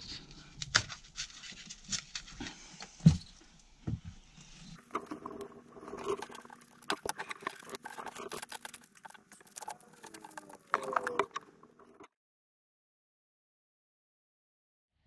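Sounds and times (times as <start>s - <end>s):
scratching and rustling: 0.0s - 3.4s, 4.2s - 12.1s.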